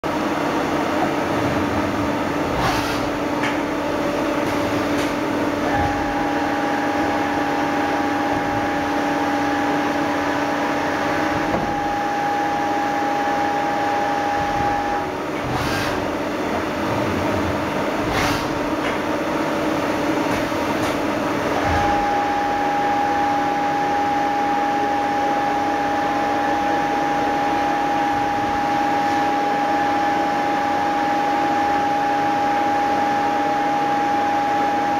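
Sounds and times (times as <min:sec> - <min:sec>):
machine hum: 0:00.0 - 0:34.9.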